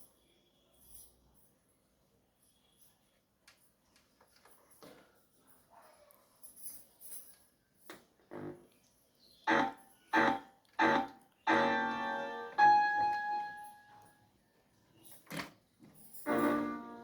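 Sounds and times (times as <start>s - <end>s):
mini keyboard notes: 9.4s - 14.1s, 16.3s - 17.0s.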